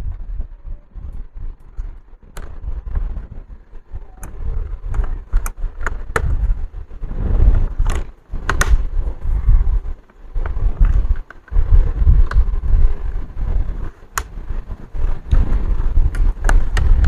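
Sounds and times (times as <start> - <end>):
low handling rumble: 0.0 - 17.0
plastic clicks and knocks: 7.8 - 8.9.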